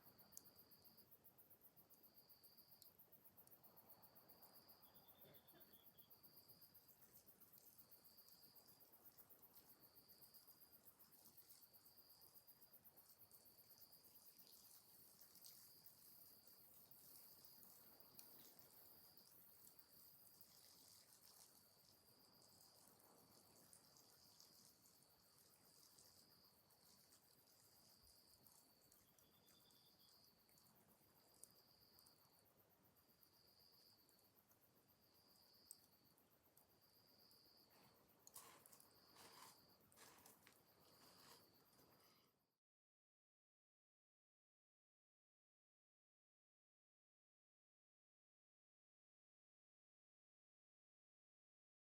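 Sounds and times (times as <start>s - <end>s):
high insect trill: 0.0s - 42.2s
insects chirping: 0.0s - 42.4s
soft ticks: 18.1s - 19.8s.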